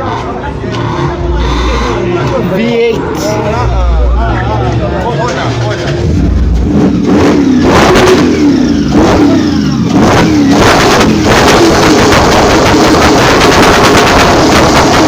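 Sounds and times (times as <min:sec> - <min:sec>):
car engine revving hard: 0:06.0 - 0:15.0
rapid stuttering rattle: 0:09.9 - 0:15.0.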